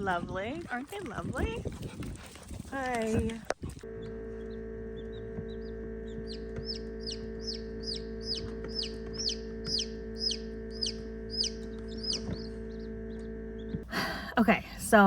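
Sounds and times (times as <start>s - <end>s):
steady hum: 1.2s - 15.0s
chicks peeping: 3.2s - 13.8s.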